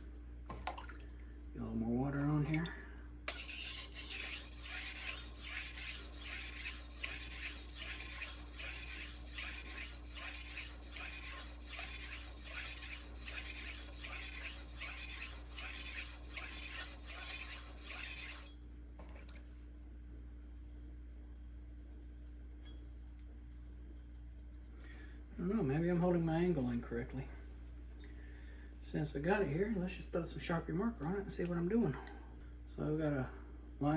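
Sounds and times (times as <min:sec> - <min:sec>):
knife scraping on whetstone: 0:03.3 - 0:18.6.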